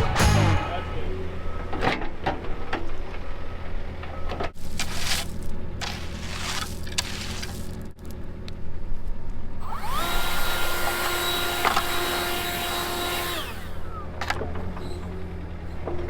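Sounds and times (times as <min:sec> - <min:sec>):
power tool motor whining: 0:09.6 - 0:15.4.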